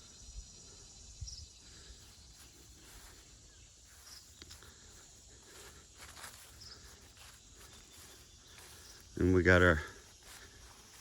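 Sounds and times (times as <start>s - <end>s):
footsteps: 2.4s - 11.0s.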